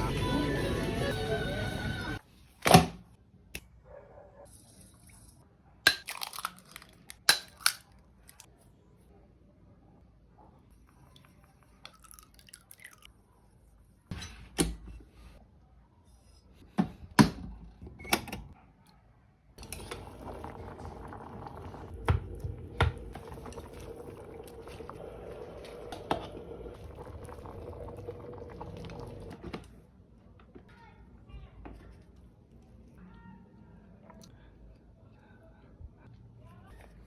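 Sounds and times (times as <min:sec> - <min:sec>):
steady liquid sound: 0:10.7 - 0:14.0, 0:19.6 - 0:29.6.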